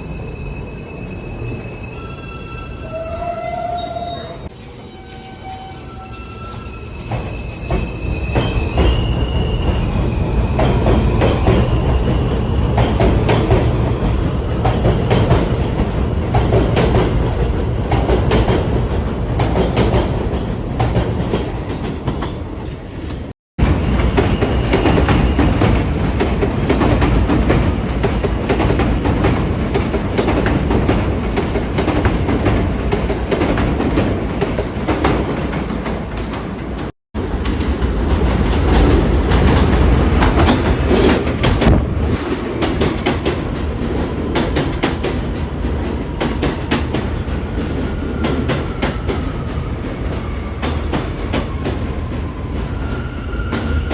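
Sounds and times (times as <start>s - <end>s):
high wheel squeal: 0.0s - 12.6s
subway train rumbling on track: 0.0s - 53.9s.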